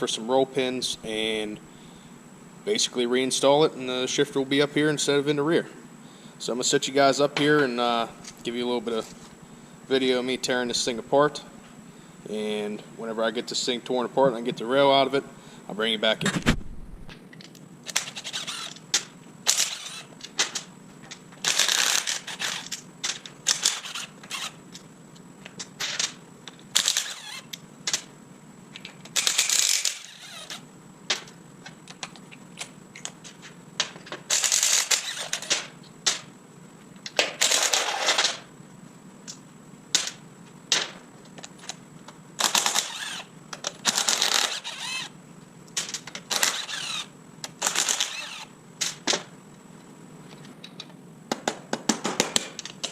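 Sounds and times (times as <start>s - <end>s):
steady low hum: 0.0s - 52.9s
rapid ratchet clicking: 17.9s - 20.2s, 21.4s - 22.8s, 23.4s - 24.6s, 26.8s - 28.0s, 28.8s - 30.6s, 34.3s - 35.5s, 42.4s - 45.1s, 45.8s - 49.0s.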